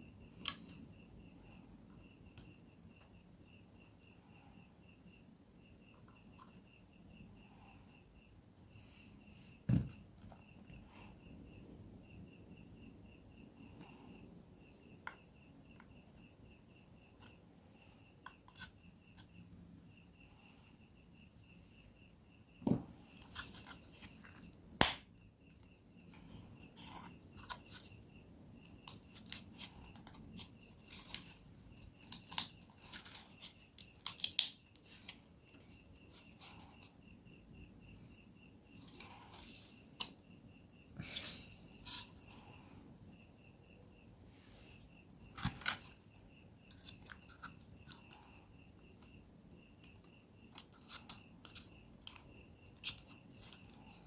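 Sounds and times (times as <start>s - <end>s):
faint pulsing chirp: 0.0s - 23.2s.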